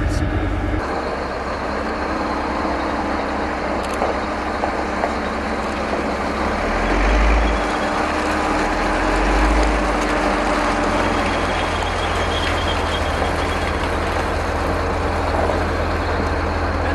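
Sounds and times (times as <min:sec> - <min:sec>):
diesel engine rumble: 0:00.0 - 0:16.9
engine whine: 0:00.0 - 0:16.9.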